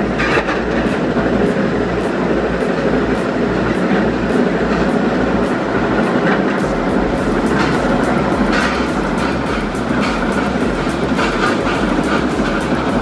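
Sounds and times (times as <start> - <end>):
industrial shredding machine grinding: 6.0 - 13.0.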